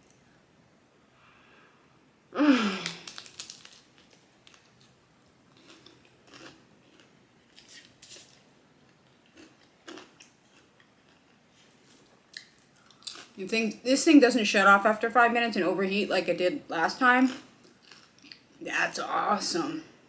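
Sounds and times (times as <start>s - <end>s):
crunching and chewing: 2.8s - 13.4s, 17.3s - 18.6s.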